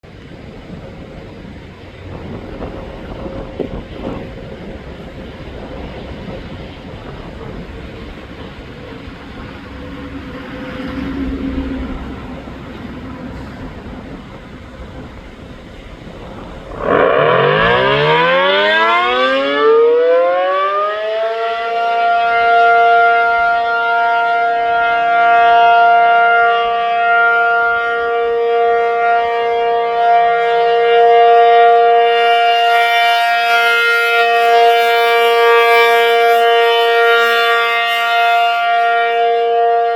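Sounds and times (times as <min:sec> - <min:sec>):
tornado siren two-tone chord: 0:16.3 - 0:39.9.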